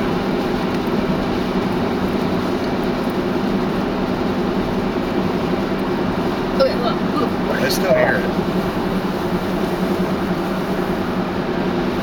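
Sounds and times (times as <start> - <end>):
vehicle cabin road noise: 0.0 - 12.0.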